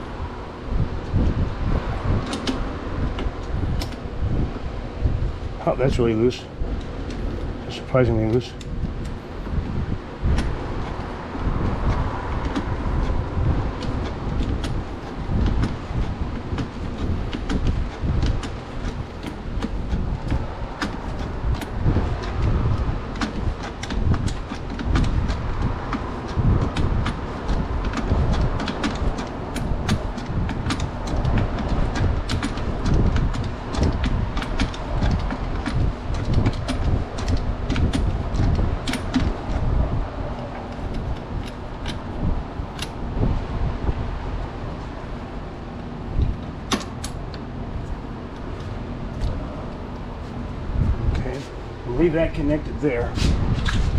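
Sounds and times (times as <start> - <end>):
steady low rumble: 0.0 - 53.9
tools clicking and knocking: 15.4 - 22.5, 23.1 - 39.6, 46.7 - 47.2.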